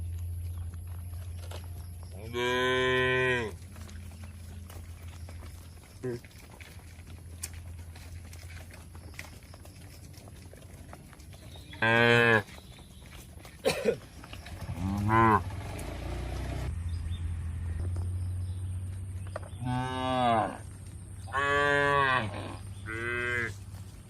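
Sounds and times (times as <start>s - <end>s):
cattle mooing: 2.2s - 4.4s, 11.7s - 12.5s, 14.6s - 16.7s, 19.6s - 20.6s, 21.2s - 23.6s.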